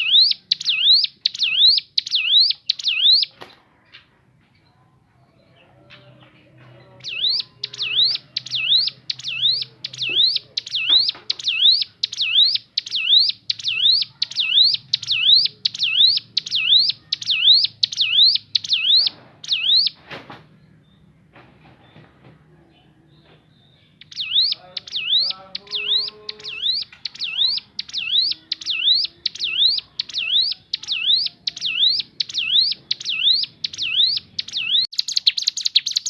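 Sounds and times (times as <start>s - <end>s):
bird singing rising whistled notes: 7.0s - 20.0s, 23.6s - 36.0s.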